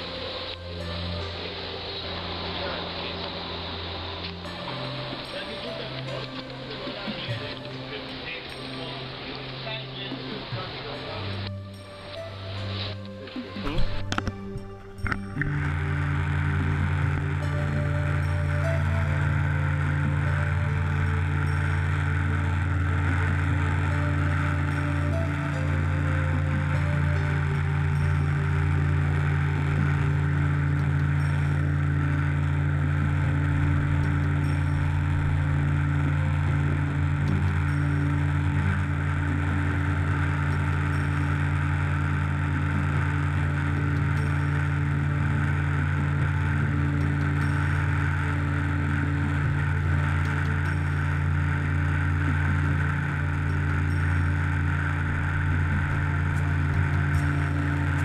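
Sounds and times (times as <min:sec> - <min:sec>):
machine humming with hiss: 0:00.0 - 0:58.0.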